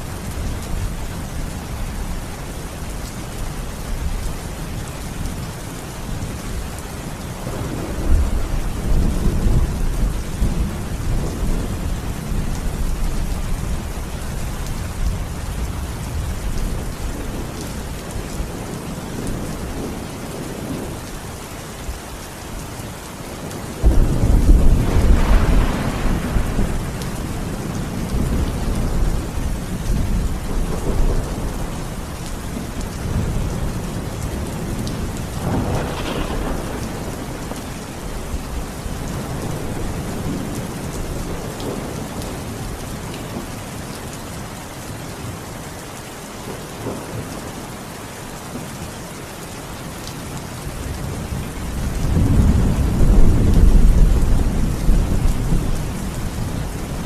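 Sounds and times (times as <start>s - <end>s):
heavy rain: 0.0s - 57.0s
loud thunderclap: 23.8s - 27.2s, 35.0s - 37.7s
low thunder rumble: 23.8s - 42.4s, 51.0s - 57.0s.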